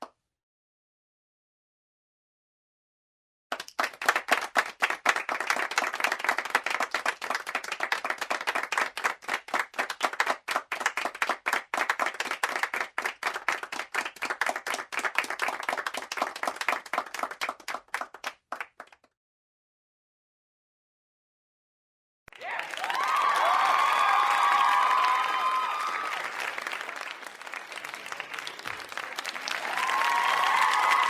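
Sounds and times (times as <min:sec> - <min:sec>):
crowd applauding: 0:03.5 - 0:19.0, 0:22.3 - 0:31.0.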